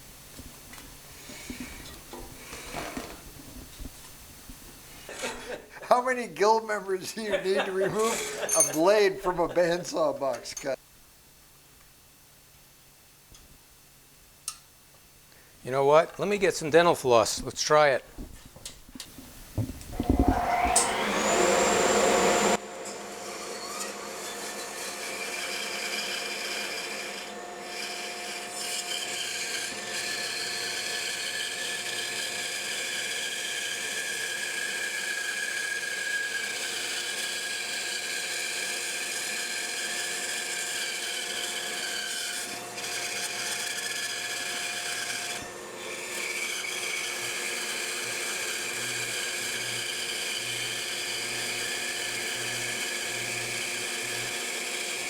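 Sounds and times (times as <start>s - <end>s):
bandsaw cutting wood: 7.1s - 10.8s, 19.8s - 55.0s.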